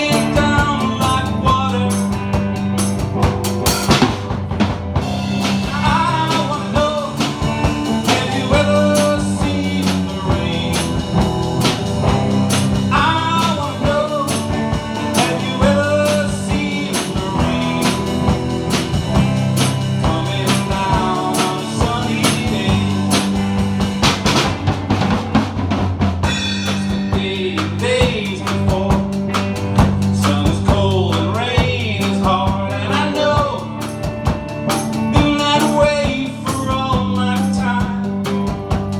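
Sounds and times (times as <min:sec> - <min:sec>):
person singing: 0:00.0 - 0:02.2, 0:05.4 - 0:11.6, 0:12.5 - 0:23.6, 0:26.6 - 0:29.4, 0:30.1 - 0:34.0, 0:35.0 - 0:38.5
song with drums and bass: 0:00.0 - 0:38.9.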